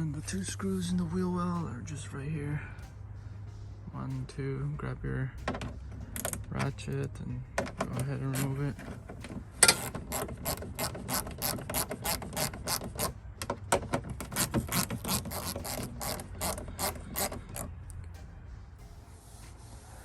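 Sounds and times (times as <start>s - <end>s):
hand ratchet clicking: 7.7s - 8.6s, 9.6s - 18.0s.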